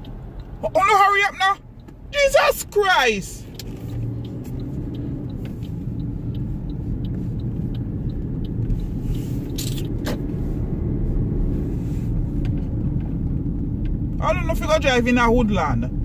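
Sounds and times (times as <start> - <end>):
faint ticking: 0.0 - 10.0
car road rumble: 0.0 - 16.0.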